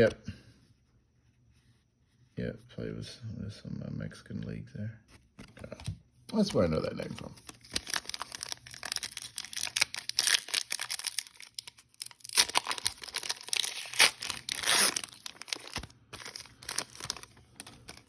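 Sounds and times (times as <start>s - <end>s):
cards rustling: 6.4s - 18.0s
packaging crinkling and tearing: 7.1s - 18.0s.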